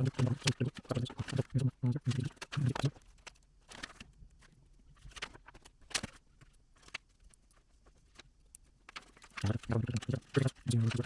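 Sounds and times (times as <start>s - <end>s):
person speaking: 0.0s - 3.0s, 9.3s - 11.0s.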